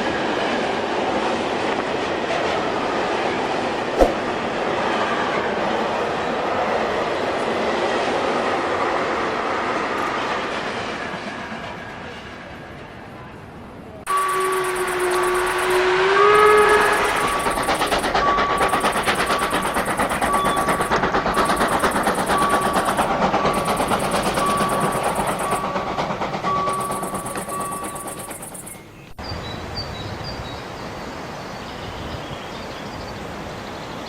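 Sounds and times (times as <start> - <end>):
train wheels rumbling on rails: 13.9 - 29.2
train horn: 14.1 - 25.7
steady repeating beep: 14.1 - 25.8, 26.5 - 28.8.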